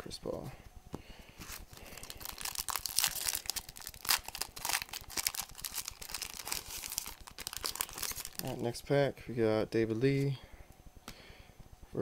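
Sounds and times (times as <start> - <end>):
card pack wrapper crinkling and tearing: 1.5 - 8.6.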